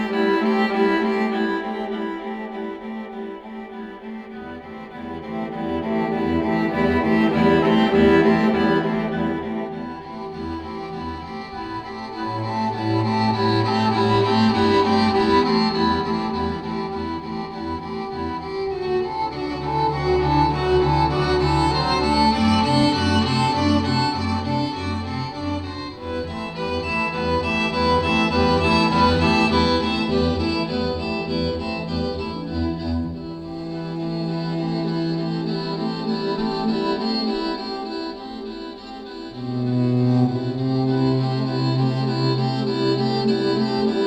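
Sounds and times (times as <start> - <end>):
bowed string music: 0.0 - 44.0.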